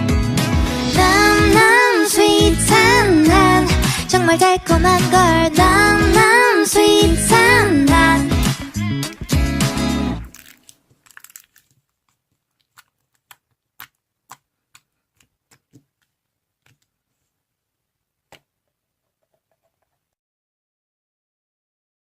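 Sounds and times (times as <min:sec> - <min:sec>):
faint clicks and taps: 0:10.9 - 0:17.2.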